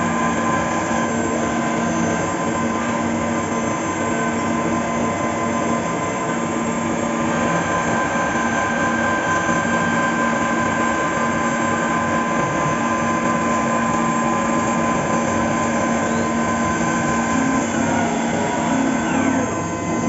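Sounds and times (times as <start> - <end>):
milling machine spindle whine: 0.0 - 20.0
machining noise: 13.4 - 20.0.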